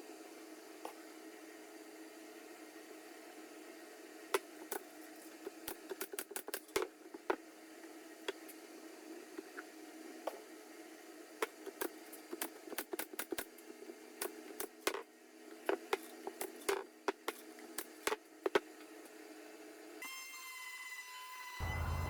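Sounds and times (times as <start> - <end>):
steady low hum: 21.6 - 22.0.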